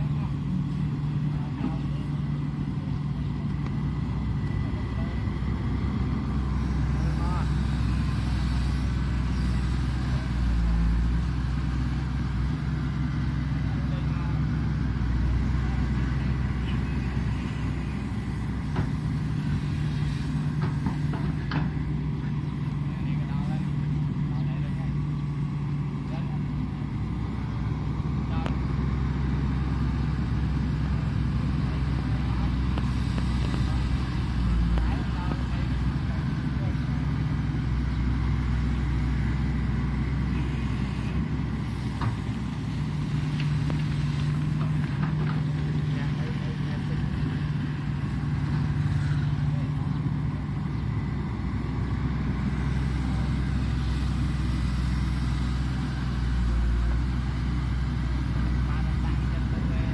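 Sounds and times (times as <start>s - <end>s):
excavator diesel engine running: 0.0s - 59.9s.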